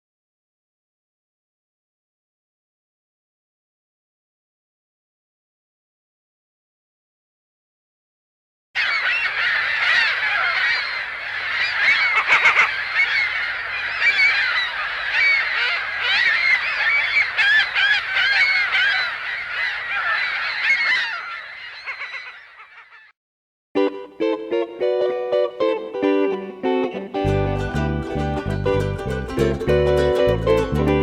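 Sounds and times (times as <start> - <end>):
flock of birds calling: 8.8 - 23.1.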